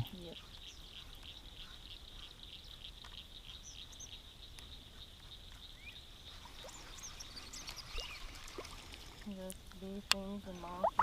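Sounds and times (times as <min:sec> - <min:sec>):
insect chirps: 0:00.0 - 0:11.0.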